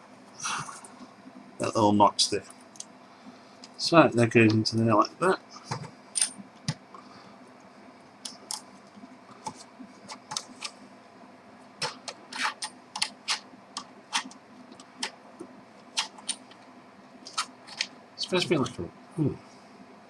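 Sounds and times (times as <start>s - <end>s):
small parts clicking and rattling: 5.7s - 6.9s, 11.8s - 15.2s, 15.9s - 16.6s, 17.2s - 18.7s.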